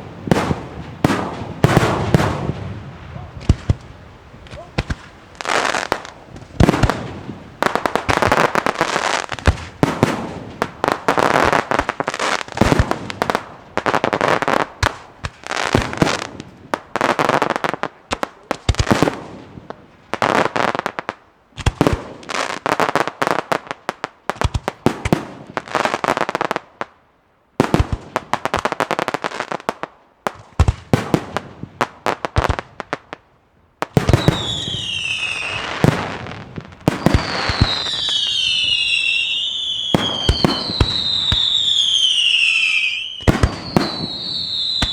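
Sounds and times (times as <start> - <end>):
fireworks crackling: 0.0 - 27.0, 33.8 - 44.9
firework shells bursting: 34.0 - 44.9.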